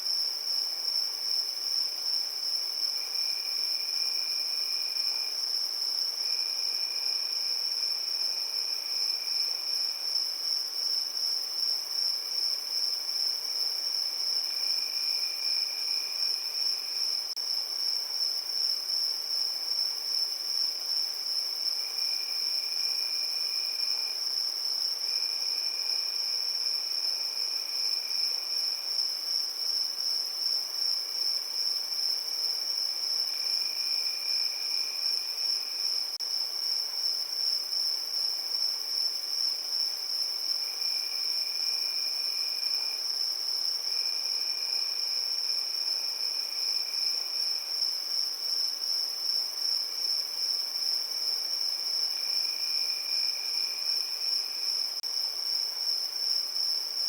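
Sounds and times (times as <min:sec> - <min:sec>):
lower cricket trill: 0:00.0 - 0:57.0.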